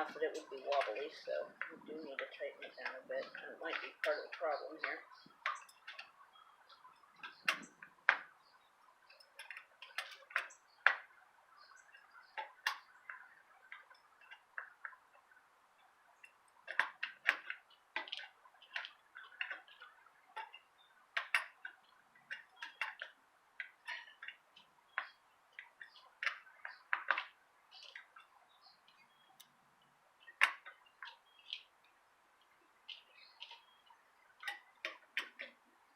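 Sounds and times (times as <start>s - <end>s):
metallic clicks of bicycle spokes: 16.2s - 28.3s, 32.4s - 35.6s.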